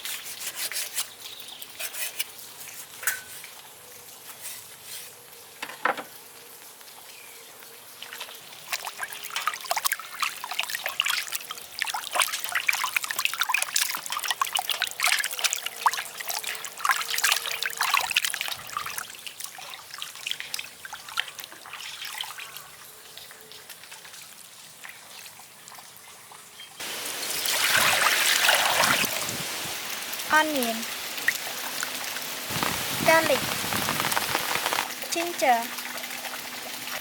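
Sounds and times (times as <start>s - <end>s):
water trickling and splashing: 0.0s - 37.0s
rush of running water: 26.8s - 37.0s.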